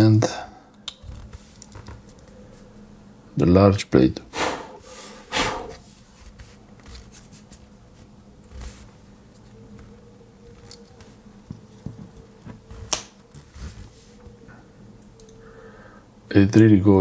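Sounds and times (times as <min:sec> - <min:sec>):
steady low hum: 0:00.0 - 0:06.7.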